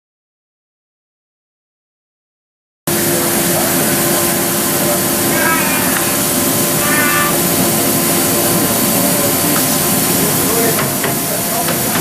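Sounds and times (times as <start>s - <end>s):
cnc machine hiss and hum: 2.9s - 12.0s
short high squeaks: 5.3s - 7.6s.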